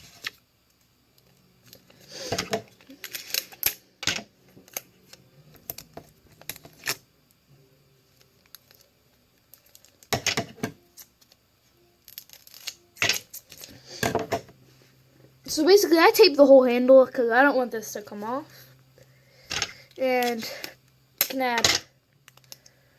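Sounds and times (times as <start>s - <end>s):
sticky tape being pulled: 12.1s - 13.7s.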